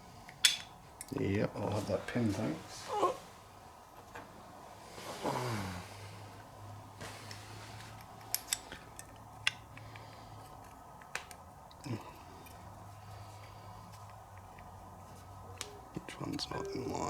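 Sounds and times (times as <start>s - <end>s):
faint steady hum: 0.0s - 17.0s
metal parts clicking and tapping: 0.3s - 1.1s, 8.0s - 11.4s.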